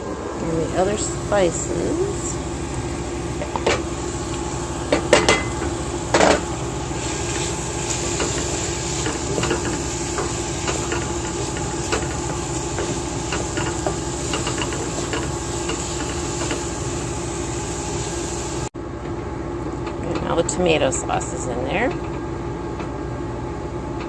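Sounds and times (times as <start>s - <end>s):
onions frying in a pan: 0.0s - 18.7s
steady hum: 0.0s - 24.0s.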